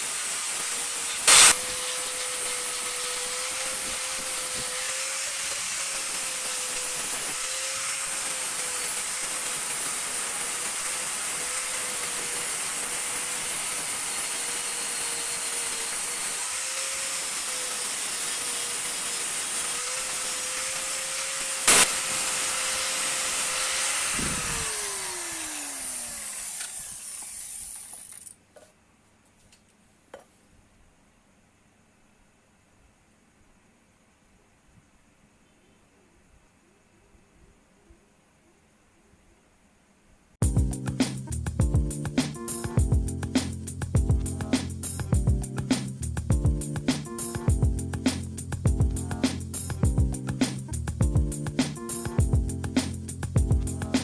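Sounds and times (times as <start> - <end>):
motor spinning down: 0.0 - 28.3
power tool humming and grinding: 0.0 - 28.3.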